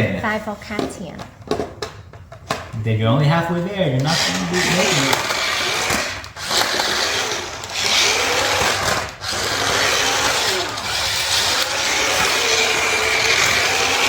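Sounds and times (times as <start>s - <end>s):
toy car electric motors whirring: 3.9s - 14.0s.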